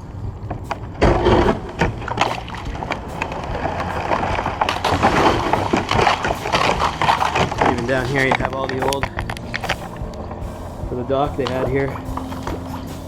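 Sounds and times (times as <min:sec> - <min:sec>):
water lapping against a kayak: 0:00.8 - 0:09.9
small knocks and splashes: 0:01.0 - 0:09.7.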